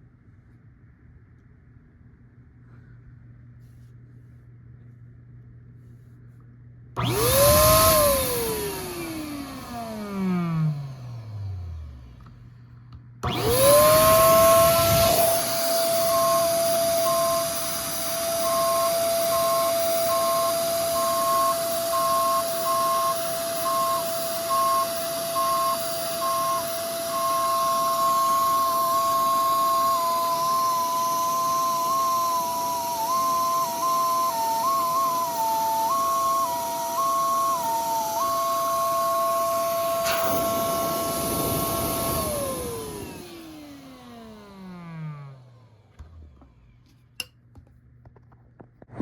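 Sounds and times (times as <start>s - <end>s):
rushing air hiss: 40.0s - 43.2s.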